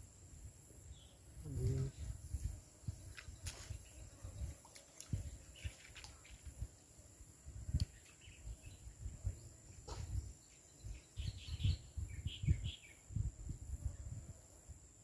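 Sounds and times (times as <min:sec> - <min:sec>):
bird chirps: 0:07.8 - 0:13.0.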